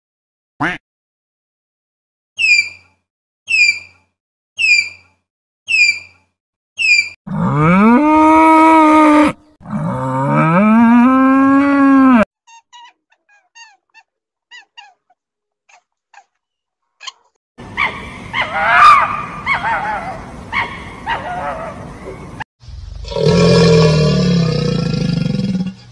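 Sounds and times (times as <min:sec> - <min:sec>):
dog barking and yelping: 0:12.6 - 0:16.4, 0:17.0 - 0:21.8.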